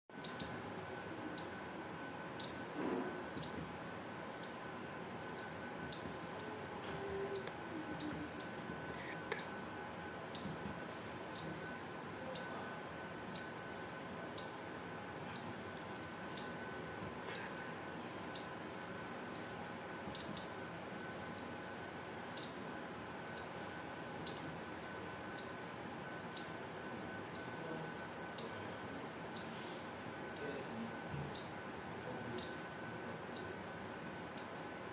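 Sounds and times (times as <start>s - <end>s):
alarm buzzer beeping: 0.2s - 1.6s, 2.4s - 3.6s, 4.4s - 5.6s, 6.4s - 9.7s, 10.4s - 11.7s, 12.4s - 13.8s, 14.4s - 15.7s, 16.4s - 17.6s, 18.4s - 19.6s, 20.2s - 21.6s, 22.4s - 23.6s, 24.3s - 25.6s, 26.4s - 27.6s, 28.4s - 29.5s, 30.4s - 34.9s.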